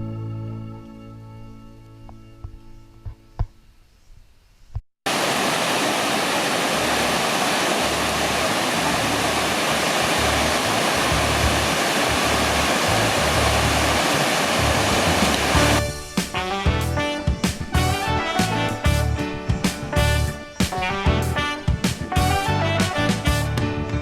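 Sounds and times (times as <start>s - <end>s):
waterfall rushing: 5.1s - 15.9s.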